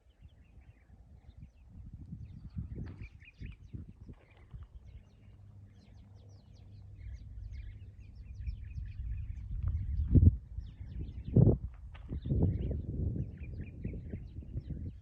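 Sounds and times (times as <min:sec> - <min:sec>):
small birds chirping: 0:00.0 - 0:15.0
low rumble: 0:04.5 - 0:14.8.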